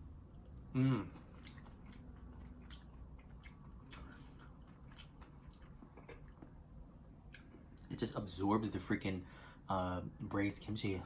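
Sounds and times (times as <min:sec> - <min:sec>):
person chewing food: 0:00.2 - 0:07.9.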